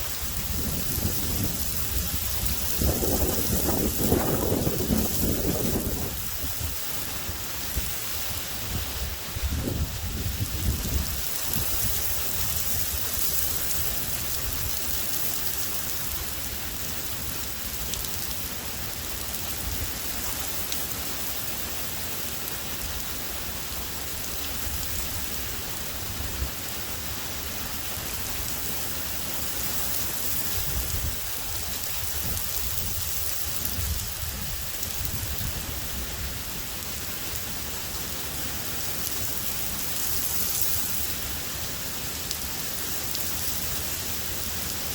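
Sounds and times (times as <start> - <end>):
heavy rain falling: 0.0 - 44.9
thunder rumble: 0.2 - 6.8.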